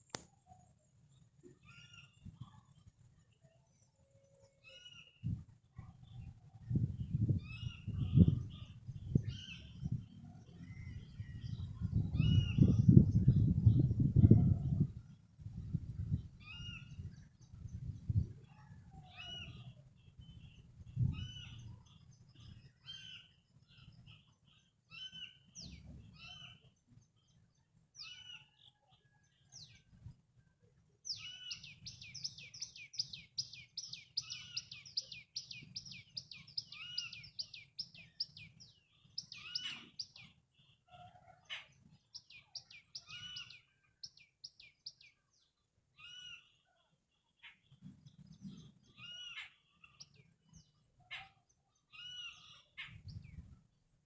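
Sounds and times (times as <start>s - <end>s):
birds calling and chirping: 0.0s - 30.2s, 30.8s - 53.8s
low wind rumble: 5.2s - 22.8s, 53.0s - 53.8s.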